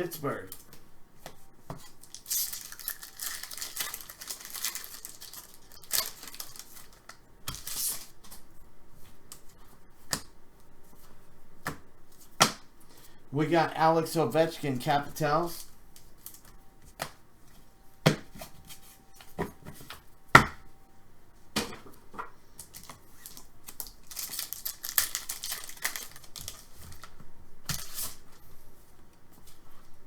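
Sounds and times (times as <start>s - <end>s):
papery rustling of cards: 1.8s - 8.4s, 22.6s - 28.2s.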